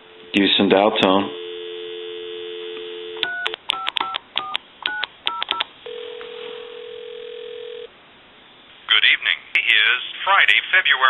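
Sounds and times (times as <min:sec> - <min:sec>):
telephone ringback tone: 0:01.3 - 0:04.2, 0:04.9 - 0:07.9
telephone dial tone: 0:01.4 - 0:07.9
touch-tone keypad digits: 0:03.2 - 0:05.6.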